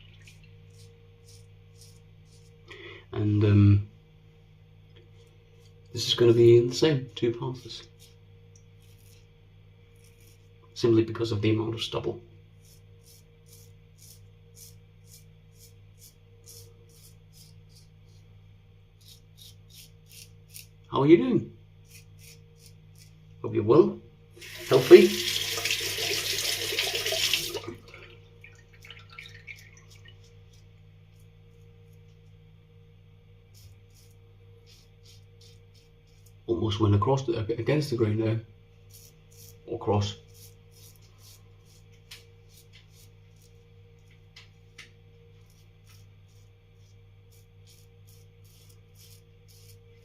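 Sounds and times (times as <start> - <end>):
faint steady hum: 0.0 - 50.0
razor scraping stubble: 0.2 - 2.6, 5.2 - 8.2, 8.8 - 9.3, 9.9 - 10.7, 12.6 - 18.3, 19.0 - 20.9, 21.8 - 23.2, 33.5 - 36.5, 38.8 - 44.2, 45.3 - 50.0.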